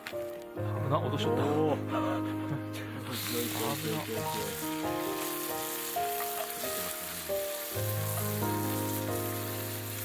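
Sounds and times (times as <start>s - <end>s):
background music: 0.0s - 10.0s
scallops sizzling in a pan: 3.1s - 10.0s.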